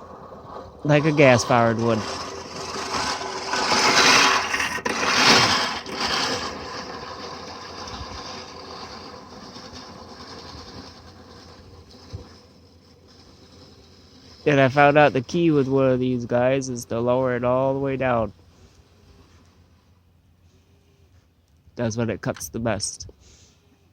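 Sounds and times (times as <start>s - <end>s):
reel lawnmower cutting grass: 0.0s - 20.0s.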